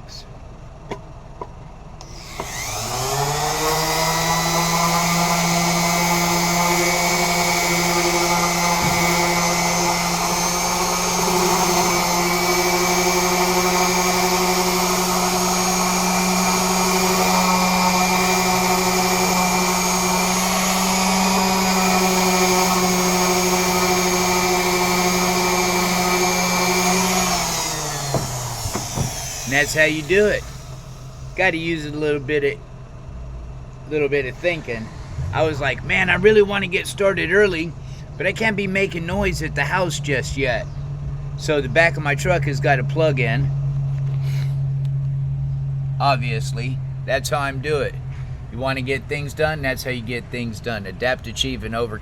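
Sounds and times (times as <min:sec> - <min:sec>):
electric sander whining: 0:00.9 - 0:43.0.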